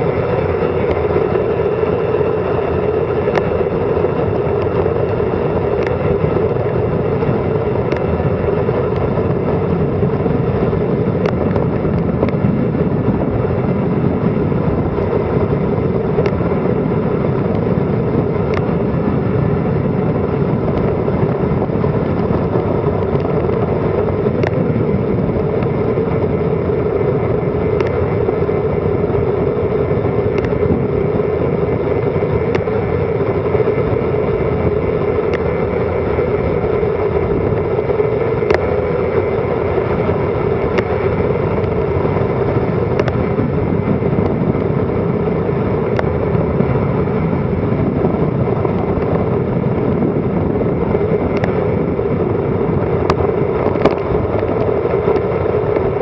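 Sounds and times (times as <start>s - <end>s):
wind rushing over microphone: 0.0s - 56.0s
light ticks: 5.8s - 6.0s, 18.4s - 18.7s, 27.7s - 28.1s, 30.3s - 30.7s, 38.4s - 38.8s.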